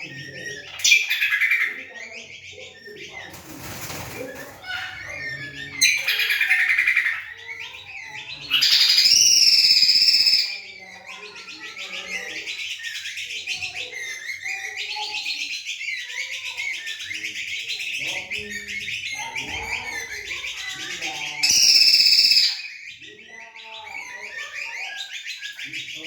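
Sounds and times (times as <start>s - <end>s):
songbirds twittering: 0.0s - 26.0s
high whistled bird phrase: 8.6s - 10.6s, 21.4s - 22.7s.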